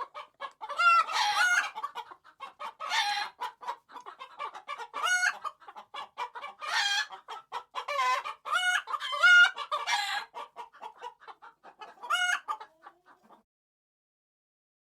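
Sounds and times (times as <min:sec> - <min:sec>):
hens clucking: 0:00.0 - 0:13.4.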